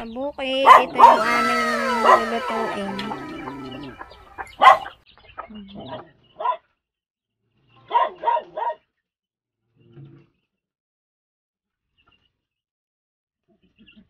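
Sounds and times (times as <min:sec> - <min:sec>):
dog barking: 0:00.6 - 0:02.8, 0:07.9 - 0:08.8.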